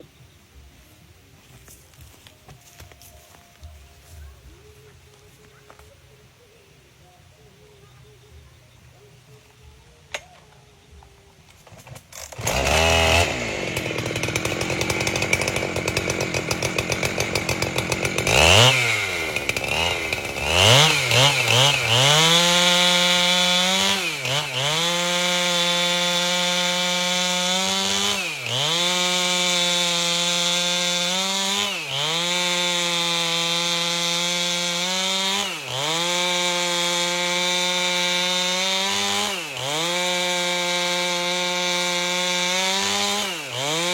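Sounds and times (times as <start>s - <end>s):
chainsaw cutting log: 11.6s - 43.9s.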